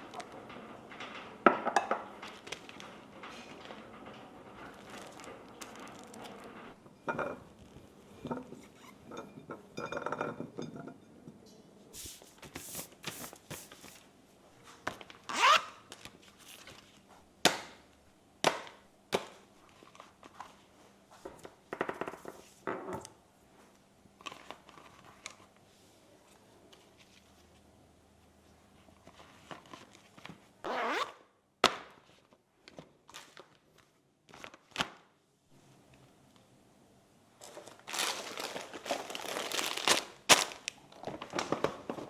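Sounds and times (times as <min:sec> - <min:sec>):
objects clicking and knocking: 0:00.0 - 0:11.0.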